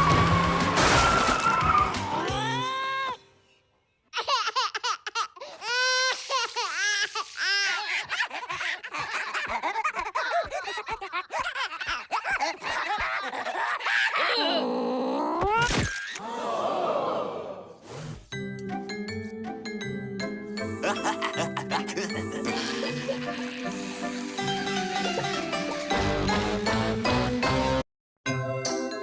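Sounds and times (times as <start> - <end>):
squeaky cartoon laughter: 4.2 - 14.4, 20.8 - 23.8.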